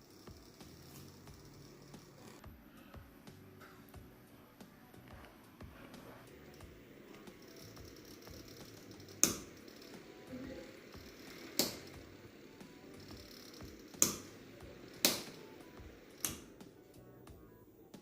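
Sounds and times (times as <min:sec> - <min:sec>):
faint steady background noise: 0:00.0 - 0:18.0
sharp clicks: 0:06.5 - 0:10.0, 0:11.0 - 0:12.0, 0:13.0 - 0:15.5, 0:16.1 - 0:16.7.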